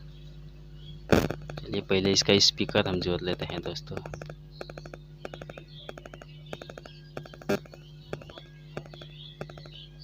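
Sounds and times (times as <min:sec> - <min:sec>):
steady low hum: 0:00.0 - 0:10.0
small clicks and taps: 0:02.6 - 0:09.8.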